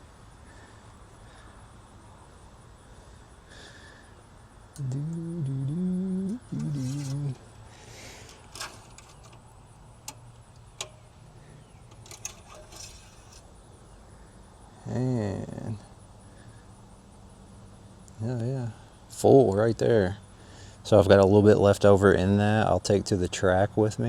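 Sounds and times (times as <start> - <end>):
man humming: 4.7 - 7.5, 14.8 - 15.8.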